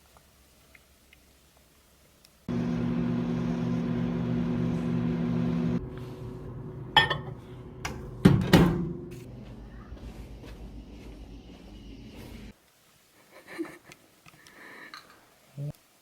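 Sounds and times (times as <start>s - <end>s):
electric hum with low pulsing: 2.5s - 12.5s
fainter hum: 2.5s - 12.5s.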